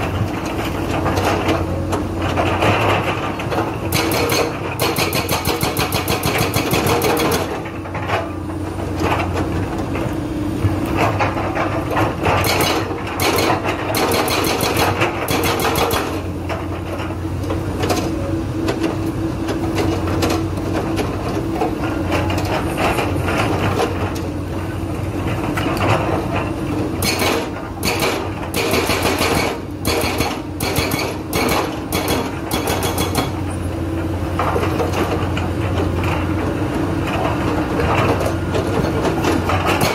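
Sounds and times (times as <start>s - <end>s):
excavator diesel engine running: 0.0s - 39.9s
hydraulic breaker hammering: 3.9s - 7.6s, 12.4s - 16.3s, 27.0s - 33.5s, 39.6s - 39.9s.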